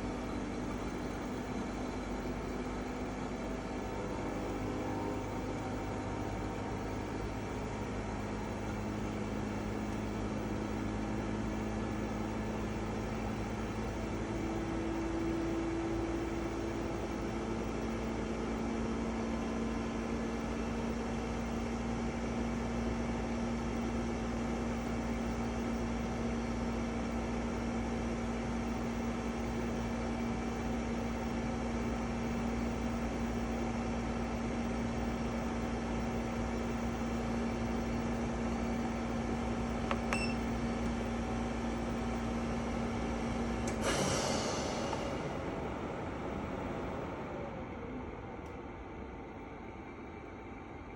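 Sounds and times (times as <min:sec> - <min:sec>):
air conditioner humming: 0:39.6 - 0:40.8.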